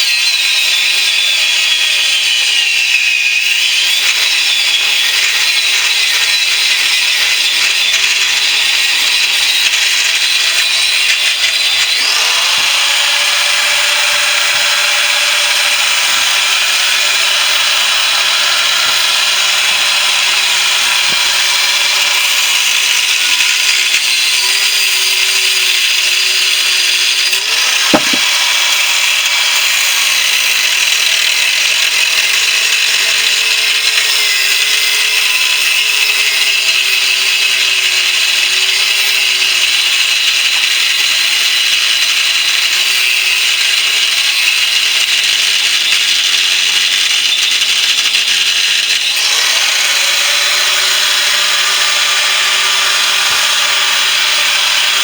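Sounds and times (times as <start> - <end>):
power tool cutting steel: 0.0 - 55.0
sharp knock: 27.9 - 28.4.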